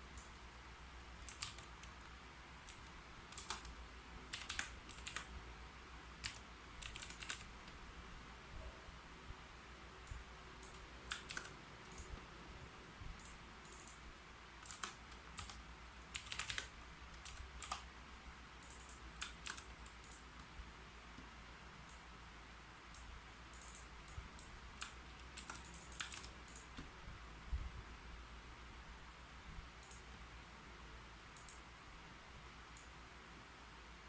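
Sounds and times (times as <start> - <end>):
keyboard key clicks: 16.2 - 17.9, 23.0 - 26.9.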